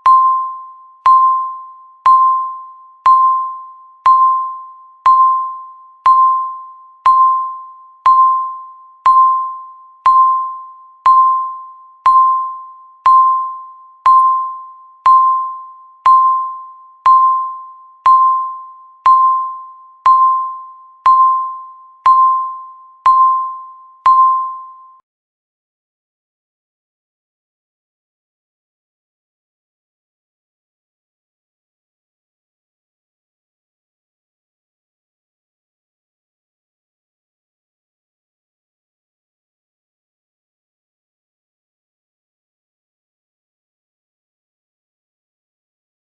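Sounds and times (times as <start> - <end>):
countdown timer beeps: 0.0 - 25.0.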